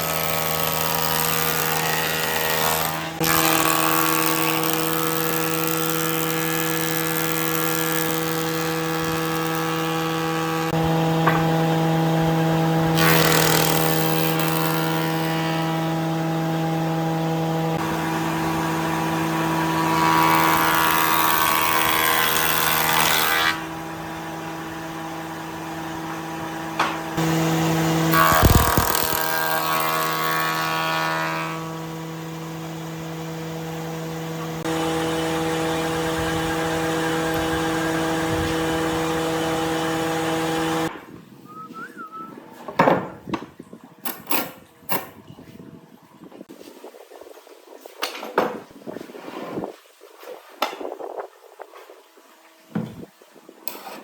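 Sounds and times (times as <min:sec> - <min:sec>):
rushing noise of wood cutting: 0:00.0 - 0:40.9
woodworking machine humming: 0:00.0 - 0:40.9
sharp knocks: 0:11.2 - 0:11.5.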